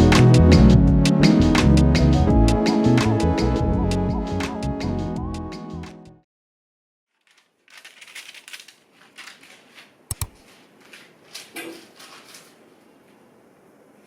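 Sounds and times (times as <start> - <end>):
background music: 0.0 - 6.2
handling clicks and rustles: 7.1 - 12.6.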